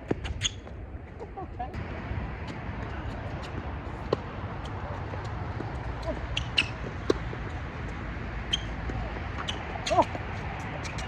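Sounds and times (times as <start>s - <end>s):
tennis ball bouncing on hard court: 3.4s - 10.2s.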